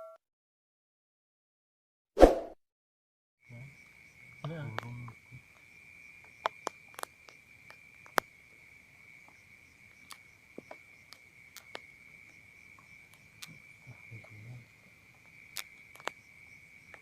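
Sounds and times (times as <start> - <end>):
crickets trilling: 3.4 - 17.0.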